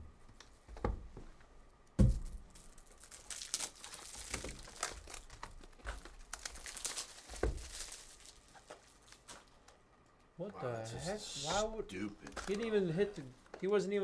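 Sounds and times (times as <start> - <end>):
thump: 2.0 - 2.4
foil wrappers crinkling and tearing: 2.0 - 9.8, 12.2 - 13.6.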